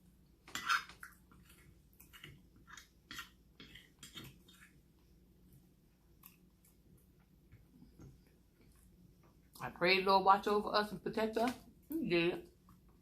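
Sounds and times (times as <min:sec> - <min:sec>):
person chewing food: 0:00.4 - 0:09.6.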